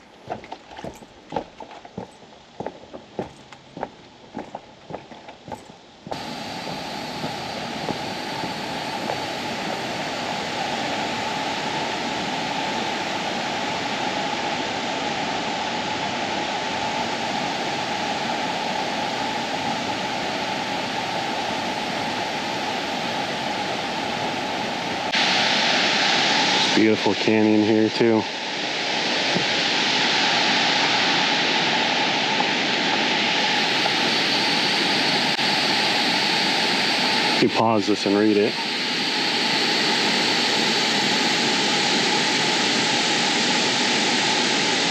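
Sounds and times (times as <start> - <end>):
waterfall rushing: 6.1 - 14.6.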